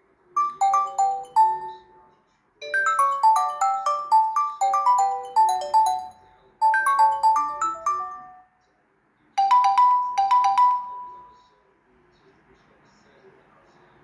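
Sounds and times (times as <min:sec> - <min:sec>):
ringtone two-note pulses: 0:00.4 - 0:08.4, 0:09.4 - 0:11.4
ringtone melody of falling notes: 0:00.4 - 0:08.5, 0:09.4 - 0:11.4.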